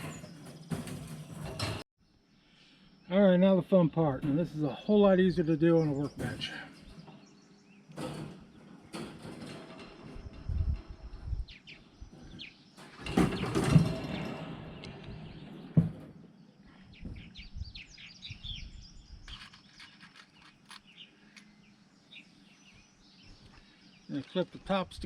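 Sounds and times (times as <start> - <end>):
wire mesh panels clattering: 0.0 - 1.8, 5.7 - 16.2
birds chirping: 0.0 - 25.0.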